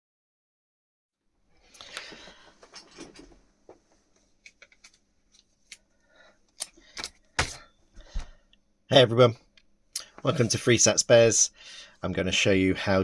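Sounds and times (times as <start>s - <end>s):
handling rustling: 1.8s - 5.8s.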